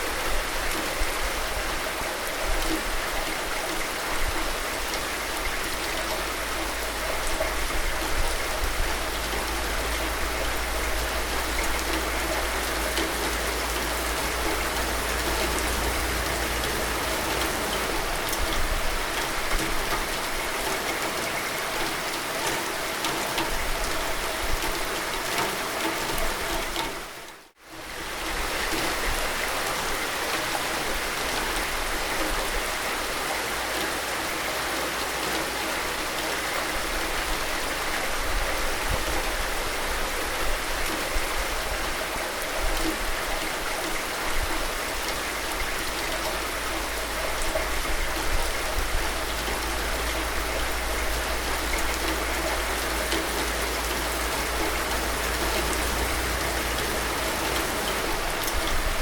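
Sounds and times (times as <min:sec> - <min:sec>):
steady rain hiss: 0:00.0 - 0:59.0
low steady rumble: 0:06.2 - 0:19.8, 0:46.0 - 0:59.0.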